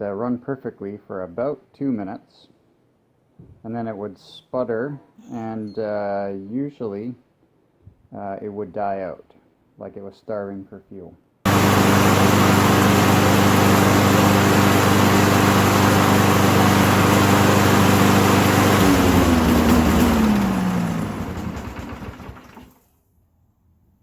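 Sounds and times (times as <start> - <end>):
lawn mower engine running: 11.5 - 22.8.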